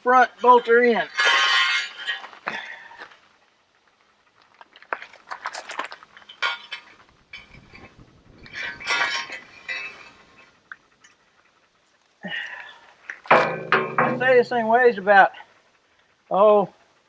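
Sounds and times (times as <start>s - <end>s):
metal clanks and scrapes: 0.0s - 3.3s, 4.4s - 11.2s, 11.9s - 14.7s.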